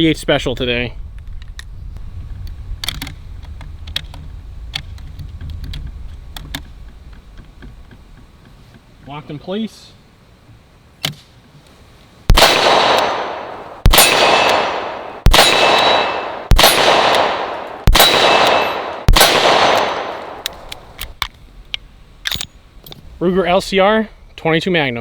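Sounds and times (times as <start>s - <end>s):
revolver shots echoing: 12.3s - 21.0s.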